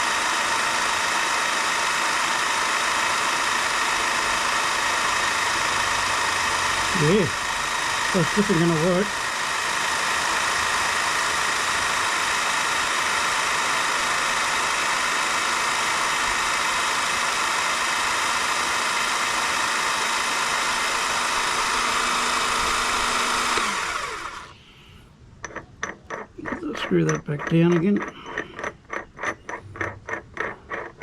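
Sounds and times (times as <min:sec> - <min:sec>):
electric hydraulic jack motor running: 0:00.0 - 0:24.6.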